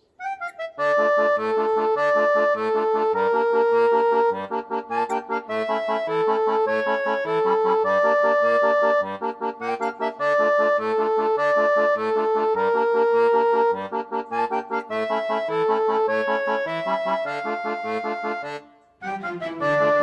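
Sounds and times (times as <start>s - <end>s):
background music with held notes: 0.0s - 20.0s.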